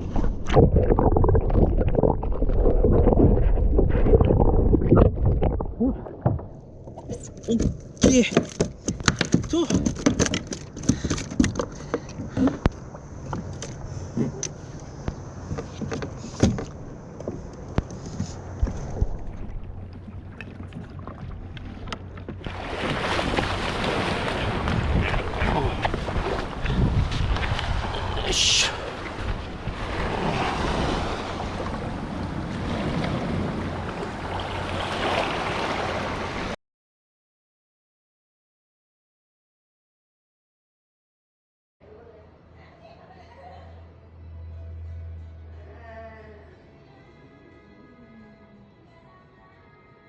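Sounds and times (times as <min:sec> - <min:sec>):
knocks and clicks on kayak: 0:06.2 - 0:14.6
water washing around kayak: 0:09.8 - 0:36.6
low steady rumble: 0:12.6 - 0:22.6
wind buffeting microphone: 0:23.2 - 0:28.2.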